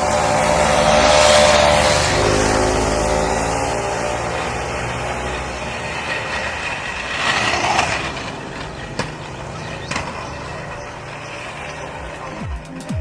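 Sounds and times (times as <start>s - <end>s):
skate wheels rolling on pavement: 0.0s - 13.0s
skate scrape: 3.6s - 12.4s.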